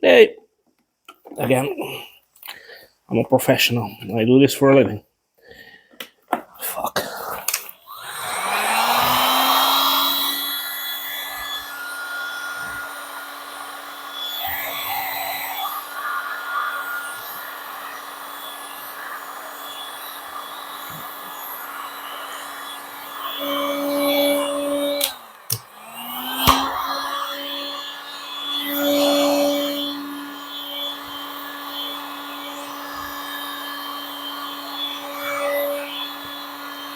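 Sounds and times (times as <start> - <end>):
heat gun fan whining: 7.5 - 36.9.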